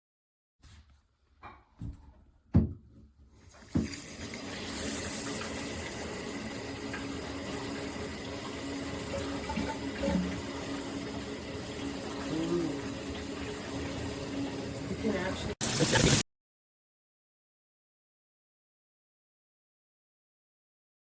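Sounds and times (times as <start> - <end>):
water spraying from shower head: 14.8 - 16.2.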